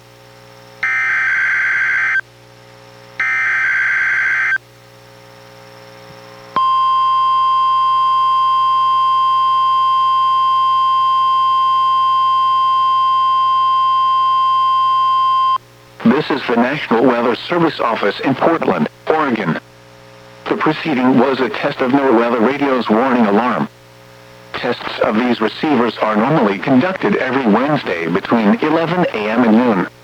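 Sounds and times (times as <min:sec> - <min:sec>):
steady warning alarm tone: 0:00.8 - 0:02.2, 0:03.2 - 0:04.6, 0:06.6 - 0:15.6.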